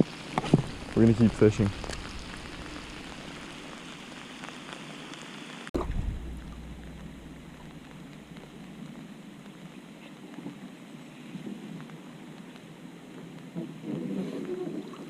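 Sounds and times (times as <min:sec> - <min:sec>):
heavy rain falling: 0:00.0 - 0:10.9
low thump: 0:05.8 - 0:08.7.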